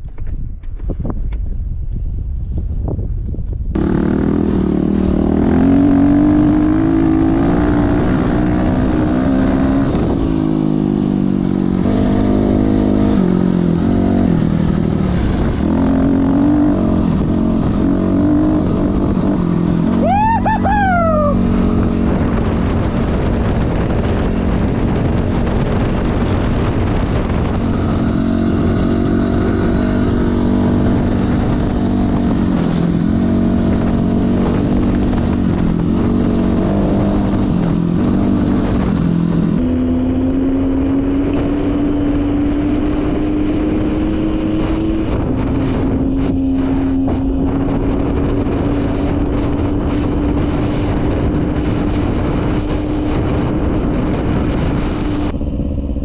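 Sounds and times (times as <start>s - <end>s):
dirt bike engine revving: 3.8s - 45.2s
high falling squeal: 20.0s - 21.8s.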